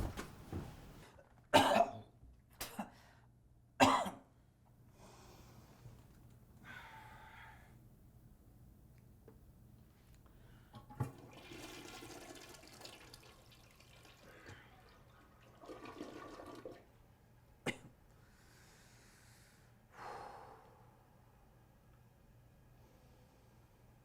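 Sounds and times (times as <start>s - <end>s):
toilet flush click: 10.8s - 14.6s
toilet water rushing: 10.8s - 17.0s.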